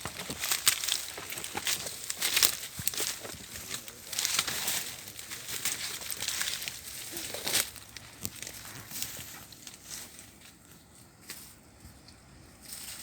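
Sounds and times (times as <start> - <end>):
twigs snapping: 0.0 - 10.0
leaves and brush rustling: 0.0 - 13.0.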